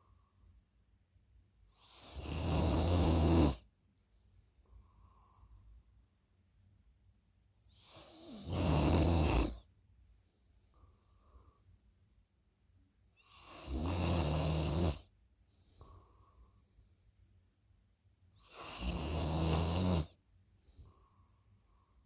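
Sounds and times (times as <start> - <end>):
soft breathing: 3.9 - 6.3, 10.0 - 12.4, 15.4 - 17.8, 20.4 - 22.0
person snoring: 8.3 - 9.6, 13.4 - 15.1, 18.5 - 20.2.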